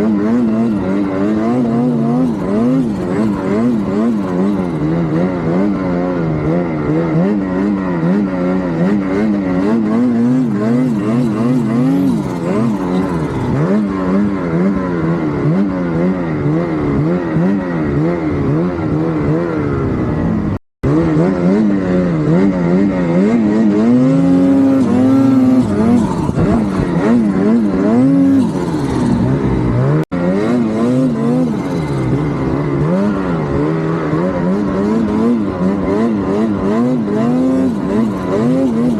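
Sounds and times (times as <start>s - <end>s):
turbocharged engine running: 0.0s - 38.9s.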